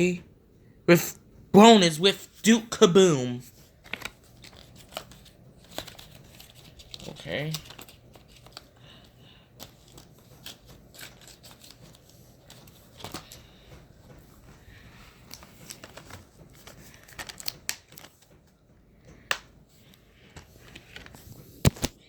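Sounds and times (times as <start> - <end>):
paper rustling: 3.4 - 18.5, 19.8 - 22.0.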